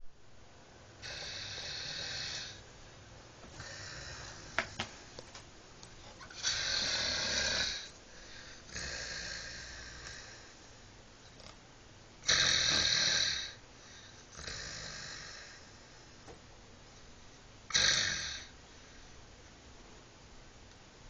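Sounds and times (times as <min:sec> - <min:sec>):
snoring: 0:01.0 - 0:02.6, 0:03.6 - 0:04.7, 0:06.3 - 0:10.5, 0:12.2 - 0:13.6, 0:14.3 - 0:15.8, 0:17.7 - 0:18.5.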